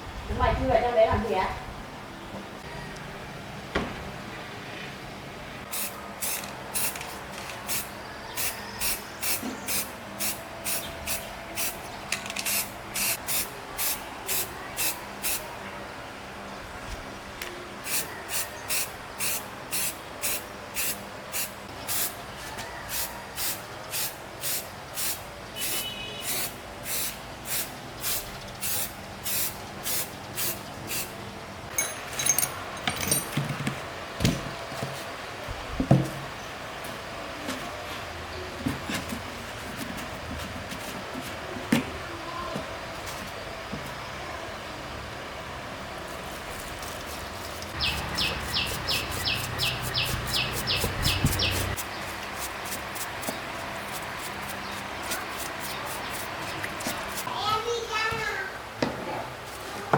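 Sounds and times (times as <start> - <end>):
short bursts of spraying: 5.7 - 11.8, 12.4 - 15.5, 17.8 - 22.2, 22.9 - 31.1, 47.2 - 57.3.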